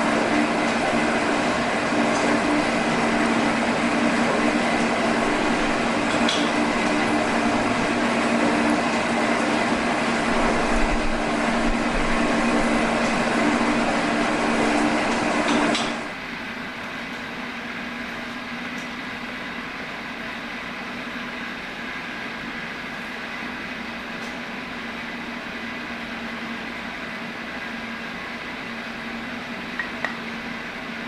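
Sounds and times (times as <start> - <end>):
machine humming: 0.0 - 25.3, 25.9 - 31.0.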